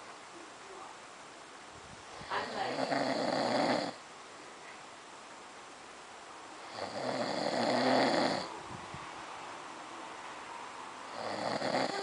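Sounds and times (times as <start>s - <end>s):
man snoring: 2.8s - 4.0s, 6.7s - 8.5s, 11.1s - 12.0s.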